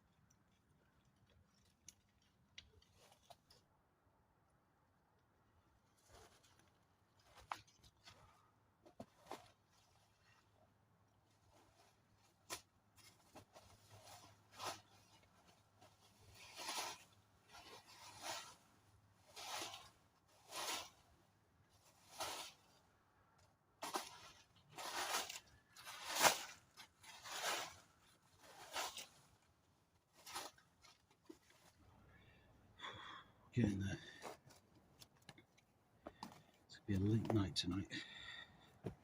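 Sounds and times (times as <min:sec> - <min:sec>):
netting rustling swishes: 0:11.5 - 0:21.1, 0:21.8 - 0:22.8, 0:23.8 - 0:31.8.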